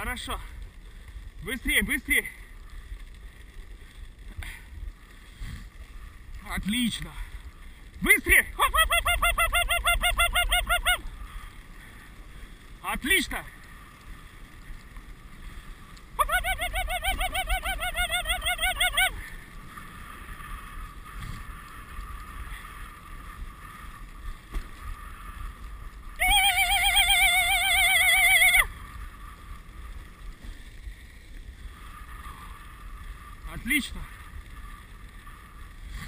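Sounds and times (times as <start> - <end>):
dog sled gliding over snow: 0.0 - 36.0
high warbling whistle tone: 26.2 - 28.7.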